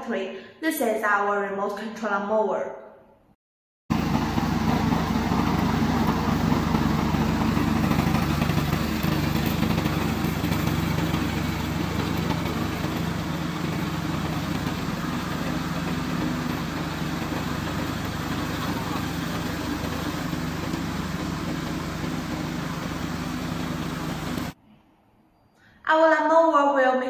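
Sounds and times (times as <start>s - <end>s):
lawn mower engine running: 3.9s - 24.6s.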